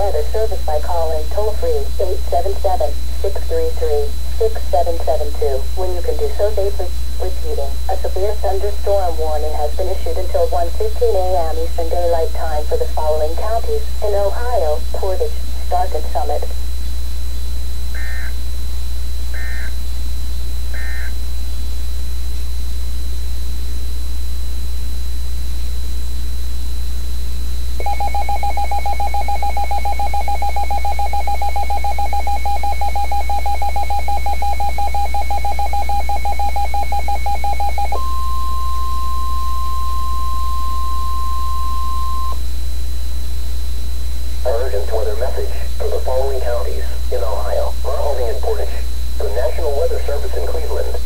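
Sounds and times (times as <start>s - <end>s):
short data bursts: 0.0s - 23.3s, 26.4s - 42.5s
low electrical hum: 0.0s - 51.0s
two-tone attention signal: 27.8s - 42.4s.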